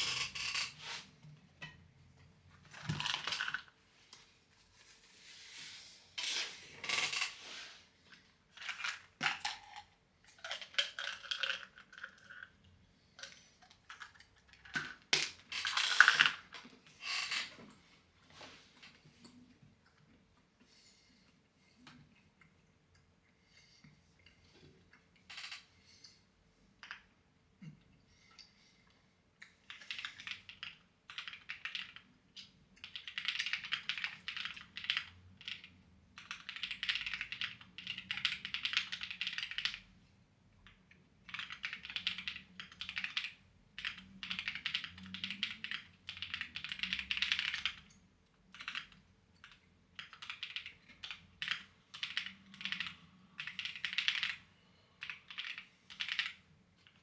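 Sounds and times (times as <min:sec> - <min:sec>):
clacky computer keyboard typing: 0:10.4 - 0:12.6, 0:29.6 - 0:39.9, 0:40.7 - 0:57.0.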